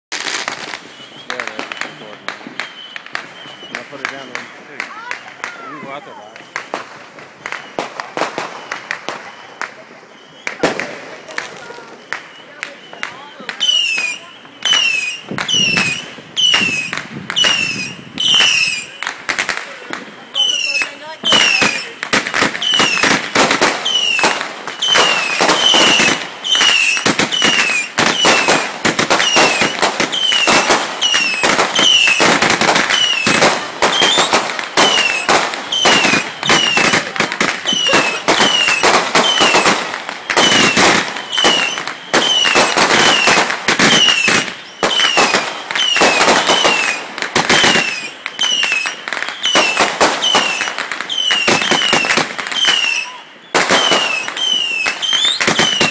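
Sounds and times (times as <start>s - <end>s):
fireworks bangs and crackles: 0.1s - 55.9s
falling whistle: 0.6s - 6.8s, 11.6s - 19.1s, 23.8s - 28.6s, 40.2s - 47.0s, 47.6s - 55.9s.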